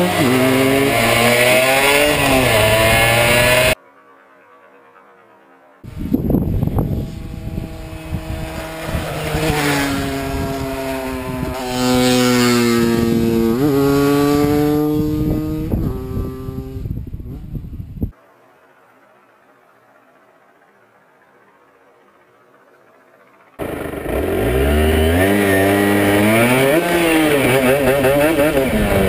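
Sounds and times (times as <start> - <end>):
two-stroke motorcycle engine: 0.0 - 3.8, 6.5 - 17.0, 22.6 - 29.0.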